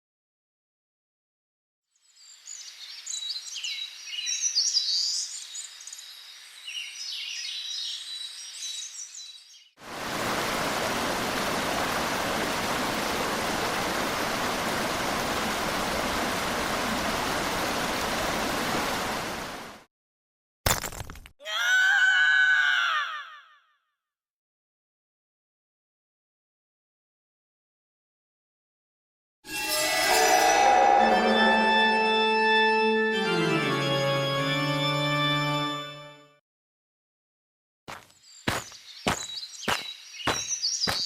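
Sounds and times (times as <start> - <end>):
birds chirping and twittering: 2.0 - 9.8, 38.1 - 41.0
flowing water rushing: 9.8 - 19.9.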